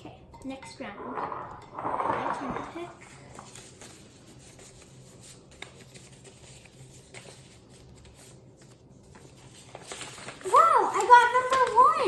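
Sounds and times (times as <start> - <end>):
paper slips rustling: 3.4 - 12.0.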